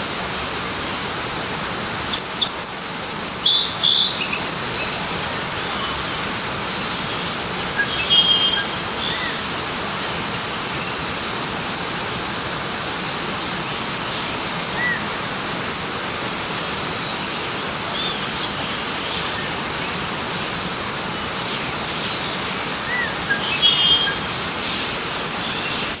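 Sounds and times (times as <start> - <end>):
river rushing: 0.0 - 26.0
birds chirping: 2.1 - 11.9, 16.1 - 26.0
long high bird call: 5.5 - 9.4, 22.8 - 24.7.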